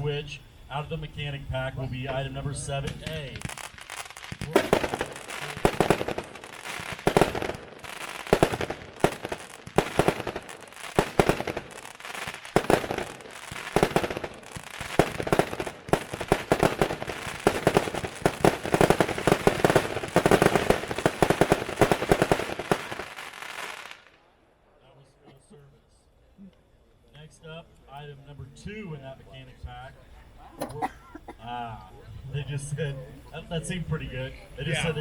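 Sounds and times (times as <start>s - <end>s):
firework bangs: 1.9s - 24.3s
firework crackle: 2.1s - 24.3s.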